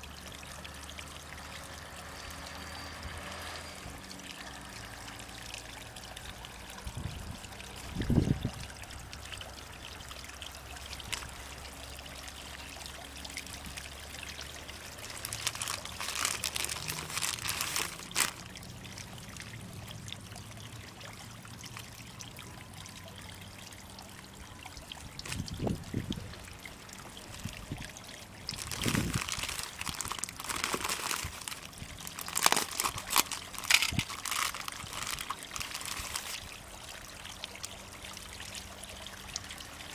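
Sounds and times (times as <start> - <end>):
water rushing and splashing: 0.0 - 39.9
water trickling and pouring: 0.0 - 39.9.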